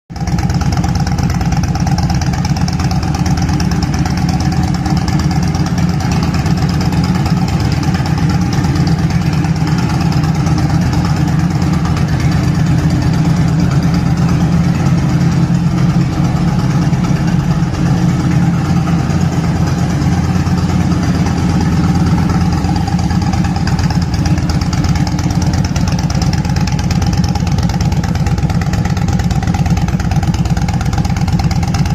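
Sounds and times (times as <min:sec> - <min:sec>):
motorcycle engine idling: 0:00.1 - 0:31.9.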